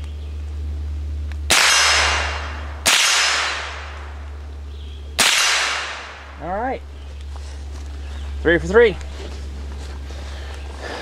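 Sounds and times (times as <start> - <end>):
rifle shots: 1.5 - 4.3, 5.2 - 6.4.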